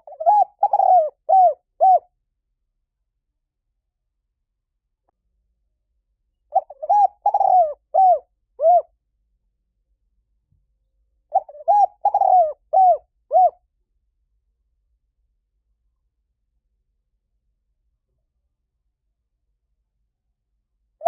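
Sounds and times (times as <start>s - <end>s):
dove cooing: 0.0s - 2.1s, 6.5s - 8.9s, 11.3s - 13.6s.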